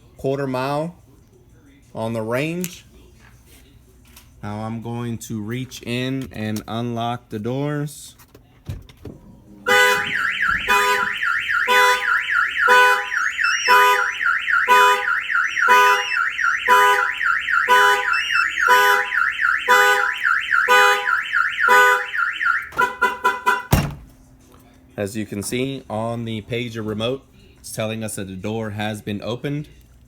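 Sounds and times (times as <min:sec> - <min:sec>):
car alarm siren warbling: 0:09.7 - 0:23.8
car horn honking: 0:09.7 - 0:24.0.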